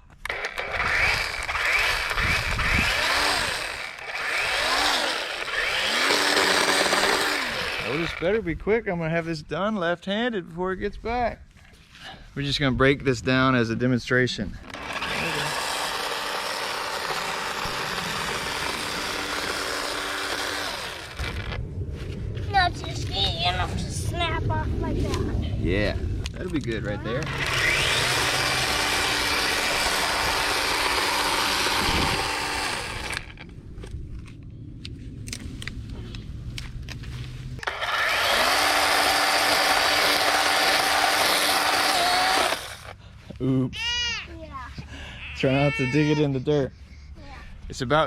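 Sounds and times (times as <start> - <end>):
electric chainsaw running: 0.1 - 8.4, 14.6 - 21.6, 27.1 - 33.5, 37.6 - 43.0.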